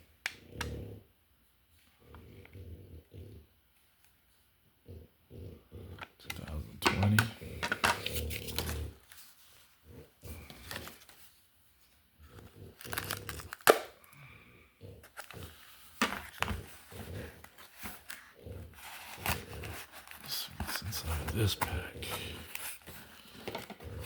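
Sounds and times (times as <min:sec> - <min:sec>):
wrapper tearing and crinkling: 0:12.7 - 0:14.0.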